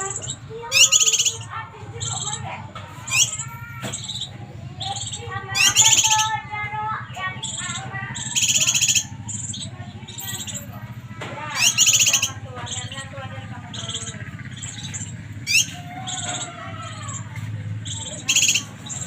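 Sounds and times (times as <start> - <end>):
bird high trills: 0.0 - 19.0
steady low hum: 0.0 - 19.0.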